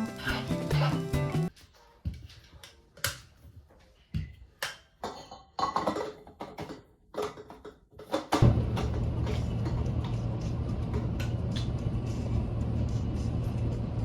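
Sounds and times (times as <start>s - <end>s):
background music: 0.0s - 1.5s
objects knocking and clicking: 4.1s - 10.3s.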